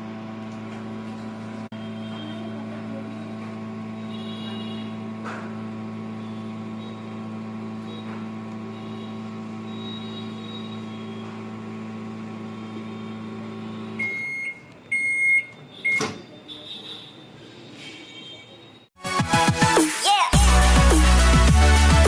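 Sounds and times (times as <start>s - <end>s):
microwave oven humming: 0.0s - 16.1s
high beeps: 14.0s - 16.1s.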